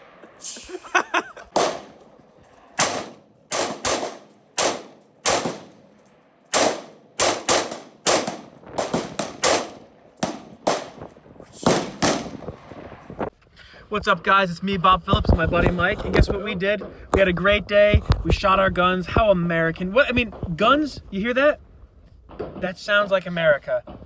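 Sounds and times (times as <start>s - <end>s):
gunshots with short echo: 1.4s - 5.9s, 6.5s - 13.3s.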